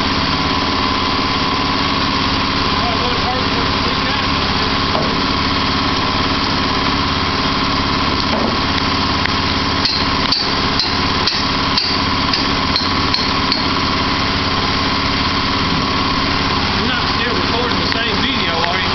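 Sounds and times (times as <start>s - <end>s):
small sawmill engine running: 0.0s - 18.9s
sharp metallic clinks: 9.8s - 14.0s.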